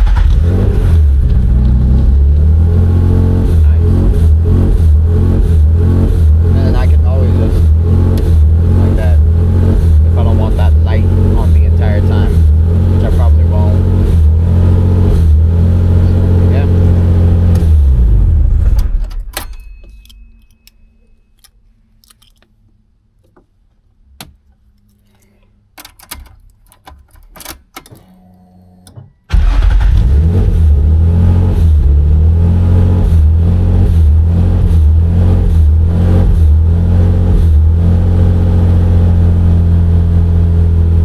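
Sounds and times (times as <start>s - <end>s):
car engine running: 0.0s - 19.2s, 29.3s - 41.0s.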